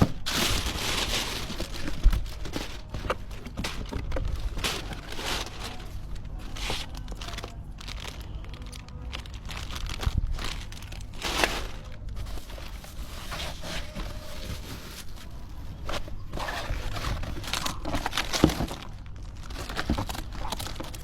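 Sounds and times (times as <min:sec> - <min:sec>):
packaging crinkling and rustling: 0:00.0 - 0:21.0.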